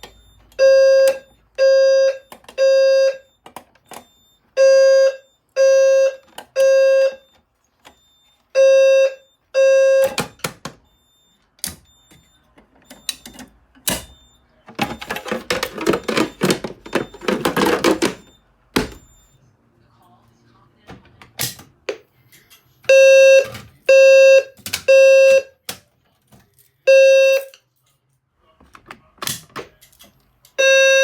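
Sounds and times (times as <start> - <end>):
fire alarm beeping low buzzy tone: 0.0 - 19.5, 22.9 - 25.6, 26.9 - 27.6, 30.6 - 31.0.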